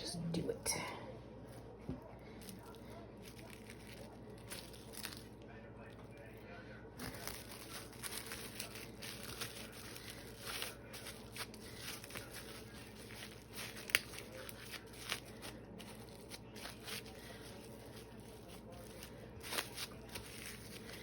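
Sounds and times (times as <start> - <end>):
crinkling and rustling: 1.5 - 6.4, 7.0 - 21.0.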